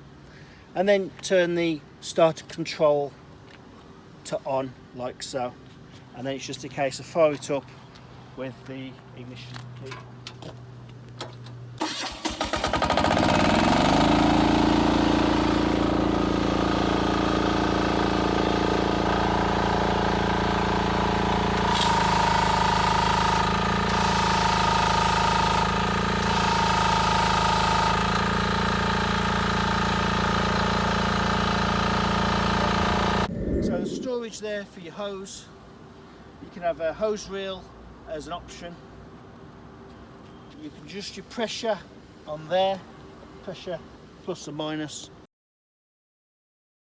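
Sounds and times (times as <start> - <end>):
diesel engine cranking and running: 11.8 - 33.3
high tone: 33.2 - 34.3.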